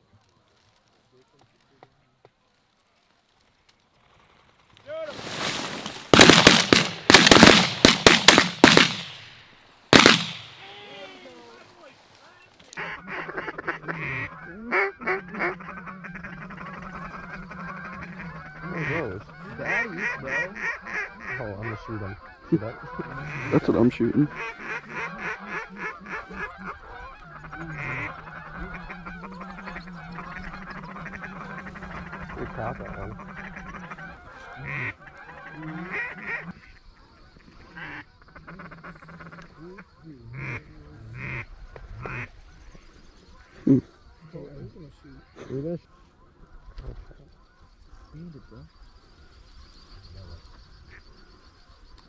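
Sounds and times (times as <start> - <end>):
shotguns firing: 5.1 - 11.2.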